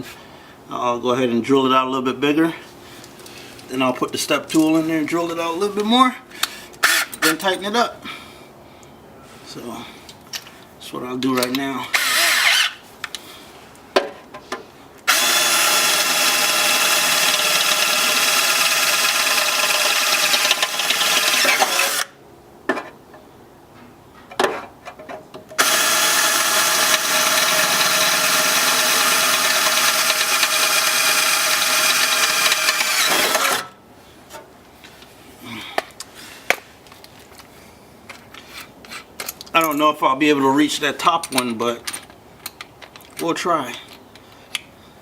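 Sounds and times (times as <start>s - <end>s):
power drill running: 6.8s - 7.2s, 11.9s - 12.8s, 15.1s - 22.2s, 25.6s - 33.8s.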